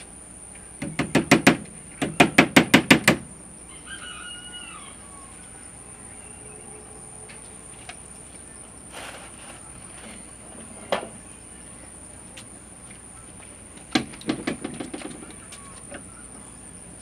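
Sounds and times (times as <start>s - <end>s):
hammer blows on wooden door: 0.8s - 3.3s
chicken call: 3.6s - 7.7s, 15.2s - 16.5s.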